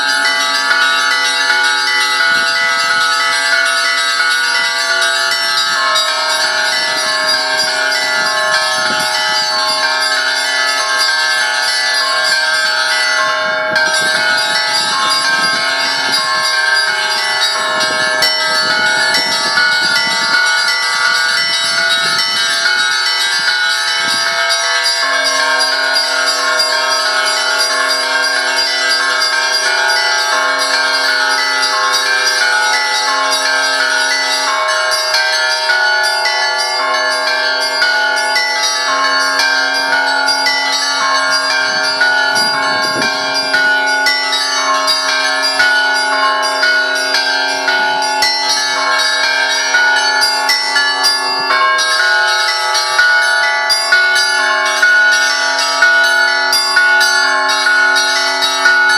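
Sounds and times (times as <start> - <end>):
deep bells humming: 0.0 - 58.9
small bells struck rapidly: 0.0 - 58.9.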